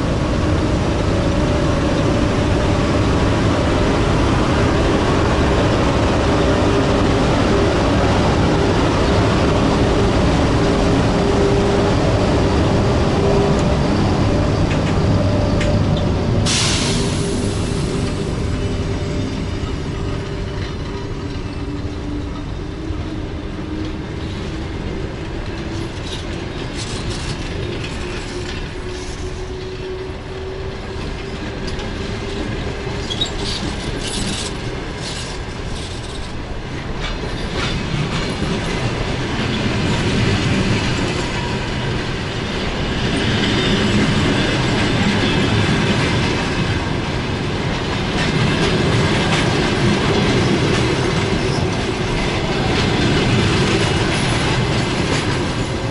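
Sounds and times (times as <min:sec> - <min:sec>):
train wheels clattering over rail joints: 0:25.2 - 0:55.9
wheel squeals: 0:33.0 - 0:36.2.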